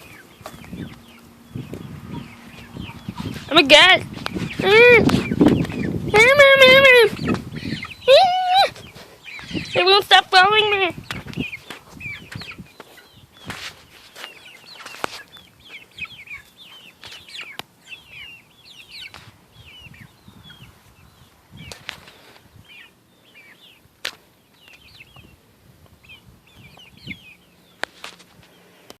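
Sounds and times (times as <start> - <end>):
chickens chirping: 0.0 - 29.0.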